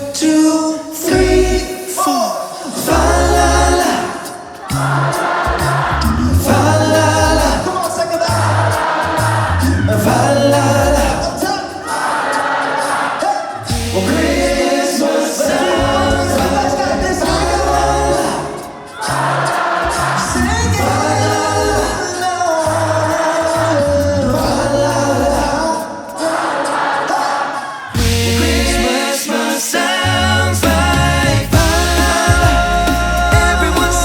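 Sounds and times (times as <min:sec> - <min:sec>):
male vocal group singing harmony: 0:00.0 - 0:34.0
sung bass line: 0:01.1 - 0:01.6, 0:02.9 - 0:03.9, 0:04.7 - 0:07.7, 0:08.3 - 0:11.3, 0:13.7 - 0:14.8, 0:15.6 - 0:18.4, 0:19.3 - 0:22.0, 0:28.0 - 0:28.9, 0:30.0 - 0:34.0.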